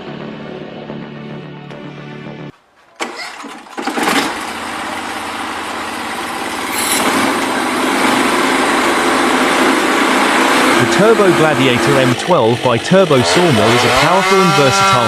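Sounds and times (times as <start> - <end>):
small engine running: 3.0 - 15.0.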